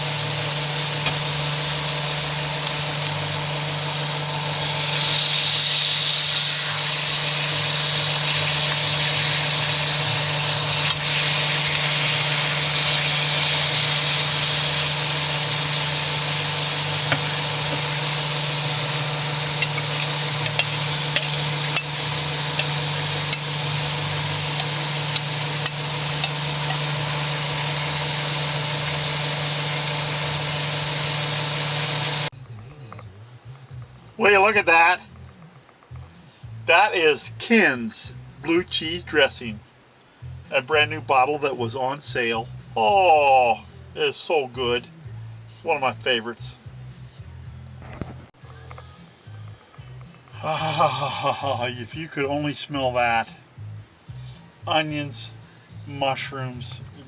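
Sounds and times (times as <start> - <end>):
meat sizzling in a pan: 0.0 - 32.3
steady low hum: 6.8 - 57.0.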